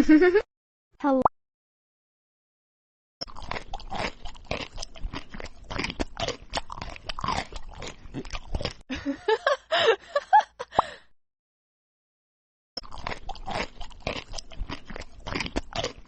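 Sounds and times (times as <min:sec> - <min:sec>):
crunchy food chewing: 0:03.2 - 0:08.8, 0:12.8 - 0:16.0.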